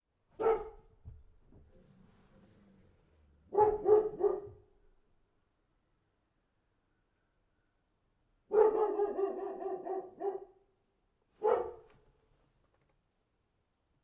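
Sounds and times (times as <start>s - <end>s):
dog barking: 0.4s - 0.9s, 3.5s - 4.7s, 8.5s - 10.6s, 11.4s - 11.9s.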